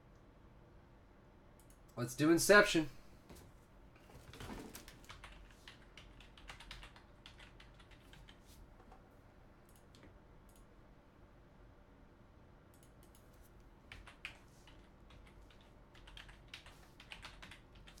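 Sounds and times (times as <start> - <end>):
typing on computer keyboard: 4.3 - 8.4, 12.8 - 13.3, 13.9 - 18.0.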